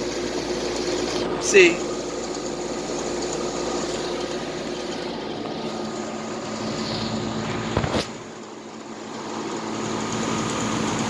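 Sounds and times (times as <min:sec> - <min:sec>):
air conditioner fan running: 0:00.0 - 0:11.0.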